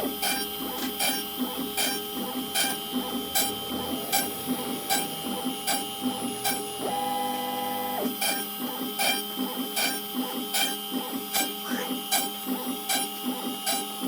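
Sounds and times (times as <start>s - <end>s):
machine hum: 0.0s - 10.0s.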